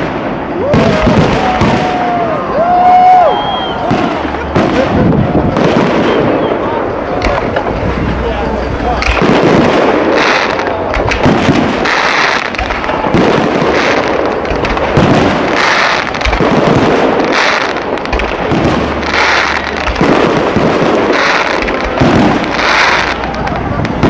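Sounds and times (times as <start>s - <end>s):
fireworks crackling: 0.0s - 24.0s
firework shells bursting: 9.0s - 24.0s.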